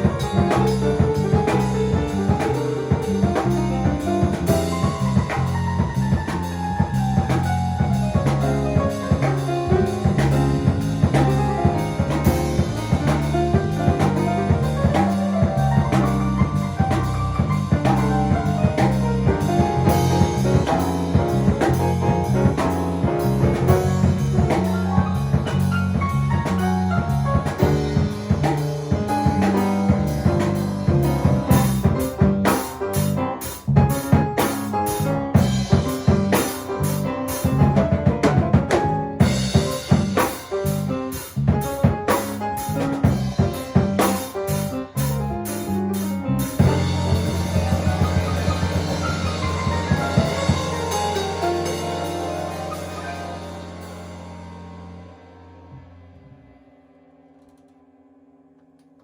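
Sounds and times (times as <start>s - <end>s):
drum kit groove: 0.0s - 55.1s
accompanying instrument melody: 46.6s - 55.4s.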